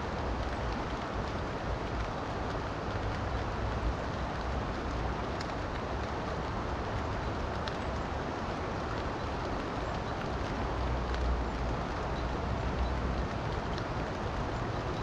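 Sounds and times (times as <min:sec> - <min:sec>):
rain: 0:00.0 - 0:15.0.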